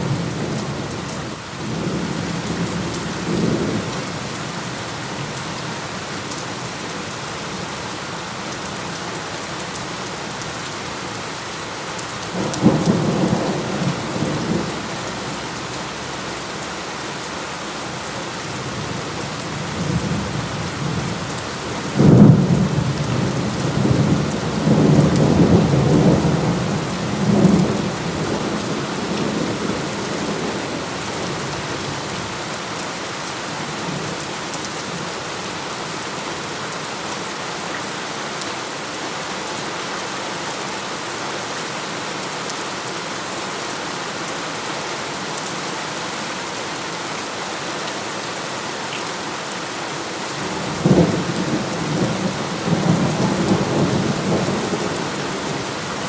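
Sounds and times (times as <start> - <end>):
heavy rain: 0.0 - 56.0
thunder rumbling: 50.6 - 56.0.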